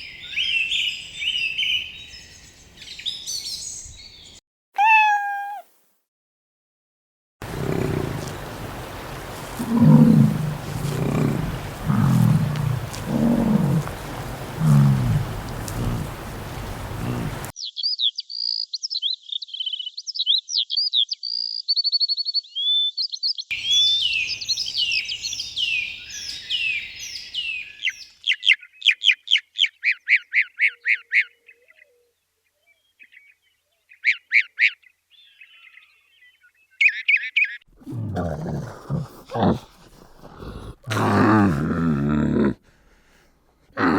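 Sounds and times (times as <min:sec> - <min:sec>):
small birds chirping and singing: 0:00.0 - 0:05.4, 0:07.6 - 0:37.6
low-pitched animal call: 0:04.8 - 0:05.6, 0:07.4 - 0:17.5.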